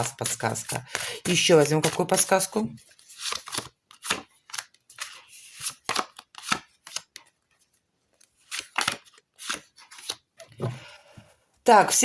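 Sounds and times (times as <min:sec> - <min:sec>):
cards sliding rustle: 0:02.8 - 0:10.9.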